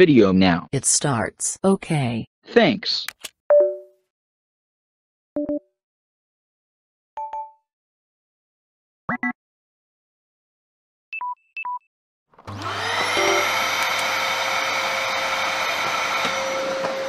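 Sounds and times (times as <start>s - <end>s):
vacuum cleaner motor whine: 12.4s - 17.0s.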